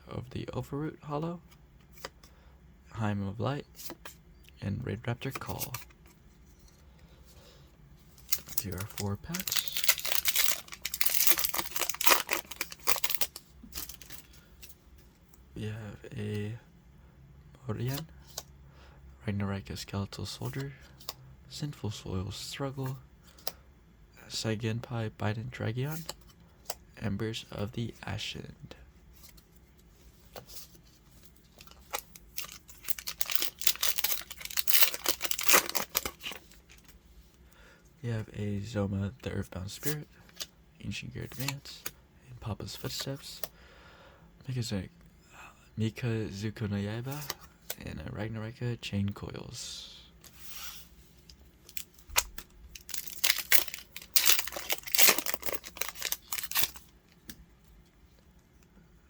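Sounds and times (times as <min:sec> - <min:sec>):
foil wrapper tearing and crinkling: 0:08.2 - 0:14.2, 0:31.6 - 0:36.7, 0:51.7 - 0:56.9.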